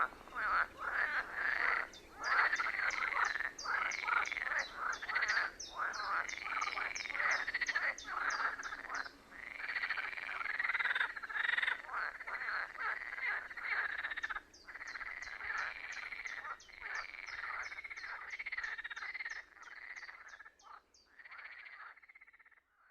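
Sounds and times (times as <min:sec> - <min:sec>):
chorus of frogs croaking: 0:00.0 - 0:22.9.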